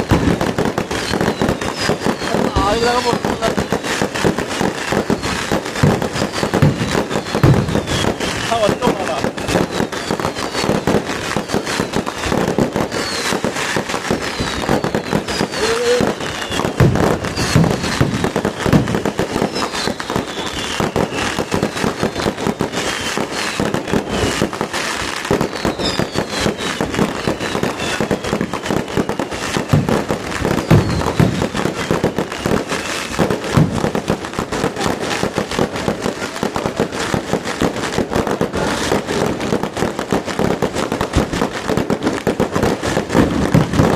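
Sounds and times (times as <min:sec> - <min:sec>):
firecrackers crackling: 0:00.0 - 0:43.9
firework bangs: 0:00.0 - 0:43.9
whistling fireworks: 0:00.0 - 0:43.9.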